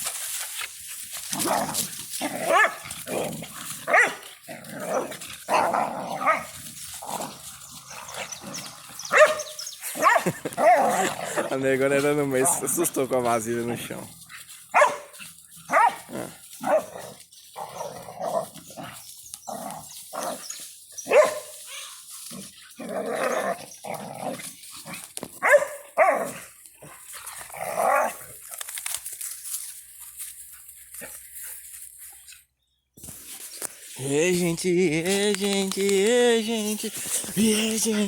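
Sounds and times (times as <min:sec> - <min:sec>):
dogs barking and yelping: 0:01.3 - 0:11.5, 0:13.7 - 0:28.2.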